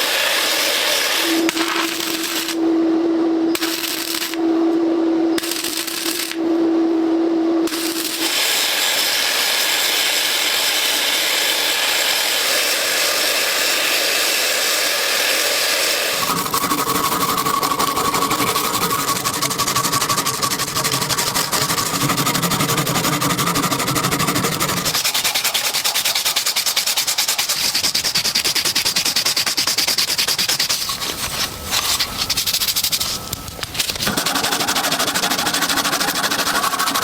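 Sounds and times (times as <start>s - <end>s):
gritty hiss of power tool: 0.0s - 2.6s, 7.7s - 17.0s
motor whine: 0.0s - 25.0s.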